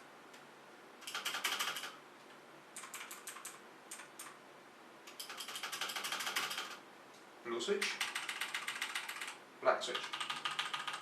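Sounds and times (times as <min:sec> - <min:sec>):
mechanical keyboard typing: 0:01.0 - 0:02.0, 0:02.8 - 0:04.4, 0:05.1 - 0:06.8, 0:07.8 - 0:11.0.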